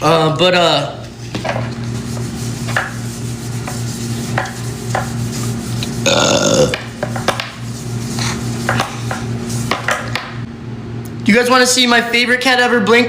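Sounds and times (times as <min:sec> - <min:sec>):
steady low hum: 0:00.0 - 0:12.8
person burping: 0:06.0 - 0:06.9.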